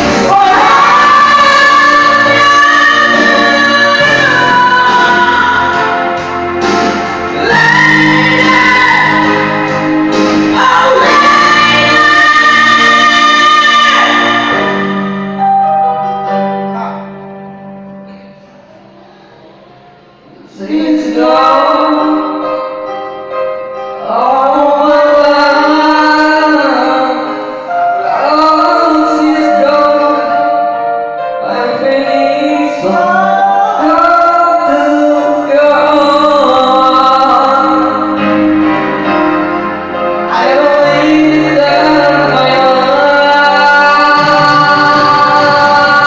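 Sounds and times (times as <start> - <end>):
music with singing: 0.0 - 46.0.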